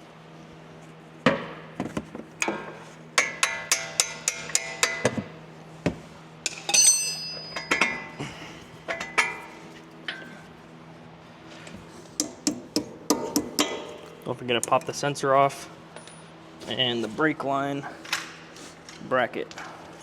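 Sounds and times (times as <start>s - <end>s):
high metallic ring: 6.4s - 8.2s
metal tools clanking on suspension: 6.4s - 10.5s.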